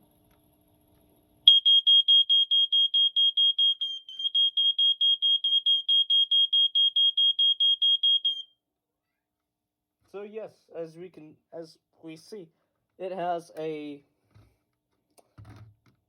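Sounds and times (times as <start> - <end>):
smoke alarm rapid beeping: 1.5 - 8.5.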